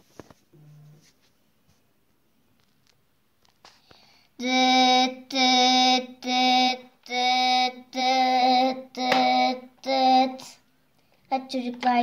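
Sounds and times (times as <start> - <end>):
high child-like voice singing: 4.4 - 10.6.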